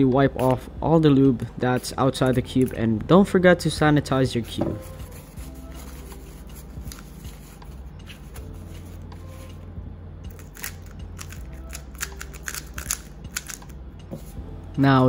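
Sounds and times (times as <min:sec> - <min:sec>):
steady low hum: 0:00.0 - 0:15.0
plastic cube clicks: 0:10.6 - 0:13.6.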